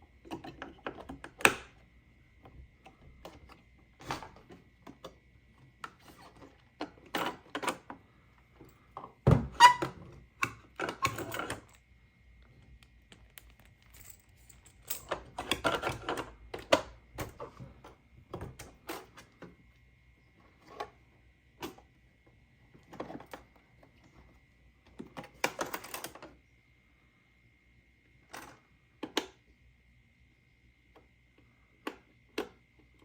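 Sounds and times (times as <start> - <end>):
plastic pieces clattering: 12.8 - 16.2.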